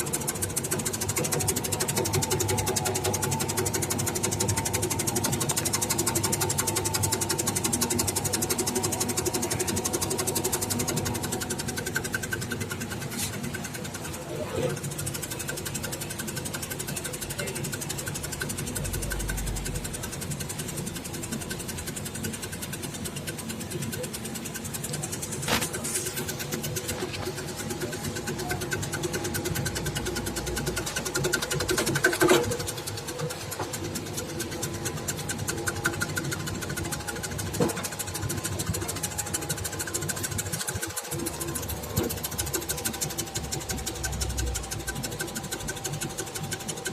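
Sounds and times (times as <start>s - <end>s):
motor hum: 0.0s - 46.9s
slicing machine ticking: 0.0s - 46.9s.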